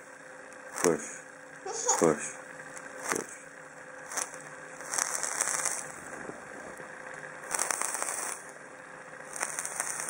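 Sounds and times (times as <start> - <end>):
vape coil crackling: 4.0 - 6.1, 7.4 - 8.6, 9.2 - 10.0.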